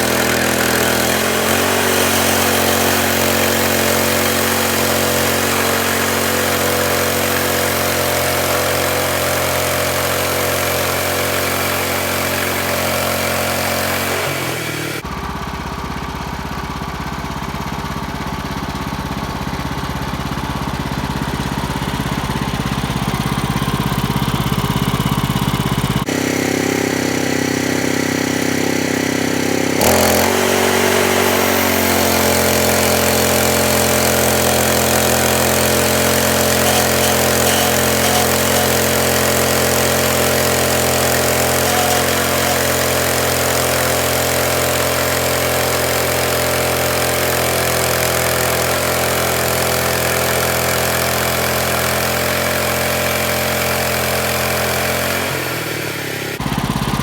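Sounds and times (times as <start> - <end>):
engine running: 0.0 - 57.0.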